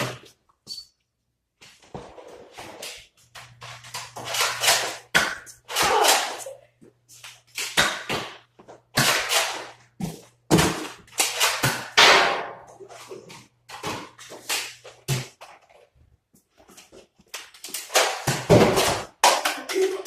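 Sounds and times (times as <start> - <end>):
foam darts hitting and clattering: 4.1 - 6.4, 7.5 - 12.7, 17.5 - 19.8.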